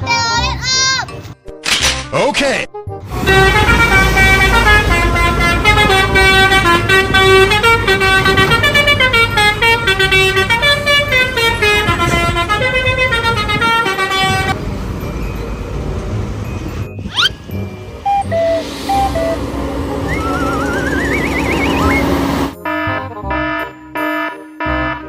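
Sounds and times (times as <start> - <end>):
musical air horn melody: 3.0 - 14.6, 18.0 - 25.0
bus engine rumble: 3.0 - 23.5.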